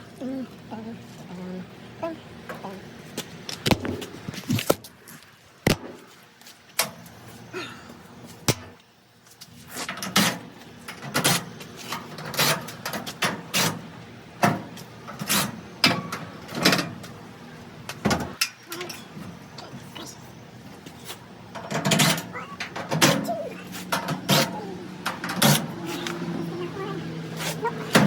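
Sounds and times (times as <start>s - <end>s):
metal parts clicking and rattling: 21.5s - 26.2s.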